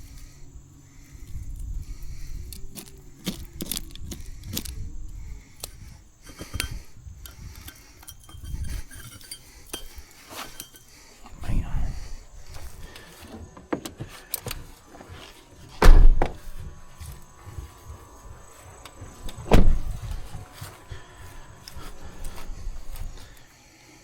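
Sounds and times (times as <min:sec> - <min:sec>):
small hard objects clinking: 0:05.6 - 0:11.1.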